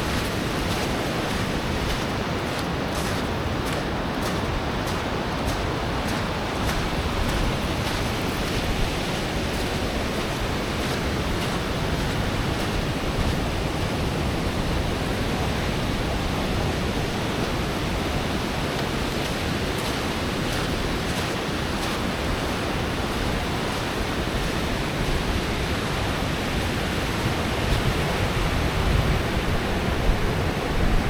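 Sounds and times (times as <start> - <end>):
ocean waves breaking on beach: 0.0 - 31.0.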